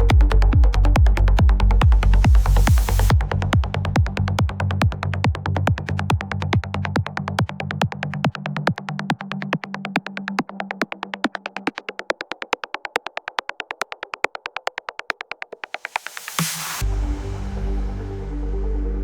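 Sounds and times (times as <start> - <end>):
low bass line: 0.0 - 7.8, 16.8 - 19.0
electronic trance music: 0.0 - 14.3, 15.8 - 19.0.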